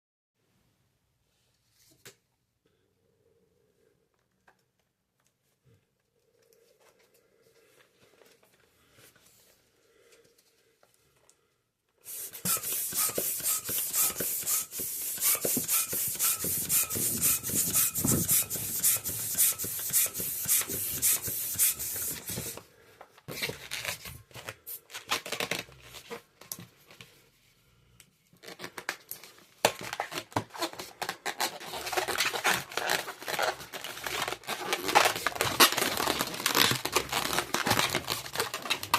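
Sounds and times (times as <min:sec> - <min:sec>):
faint handling sounds: 0:04.0 - 0:15.6
balloons squeaking and crinkling: 0:12.1 - 0:22.6, 0:23.5 - 0:26.4, 0:29.8 - 0:38.9.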